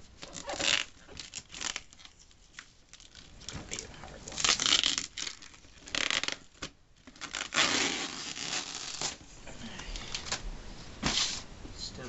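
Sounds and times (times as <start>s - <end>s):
cardboard and plastic tearing: 0.2s - 9.2s.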